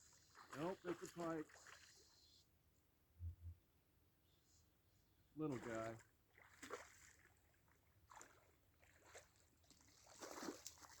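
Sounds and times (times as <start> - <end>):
water splashes and drips: 0.0 - 2.2, 5.4 - 11.0.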